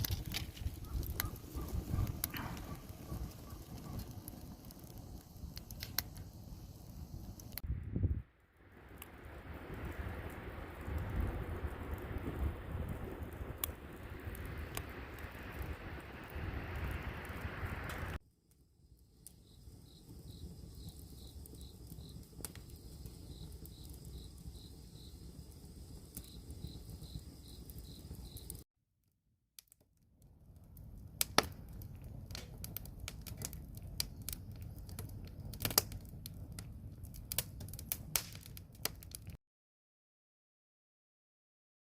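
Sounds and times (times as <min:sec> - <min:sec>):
campfire crackling and popping: 0:00.0 - 0:28.6, 0:29.6 - 0:39.4
insect chirping: 0:19.0 - 0:28.6.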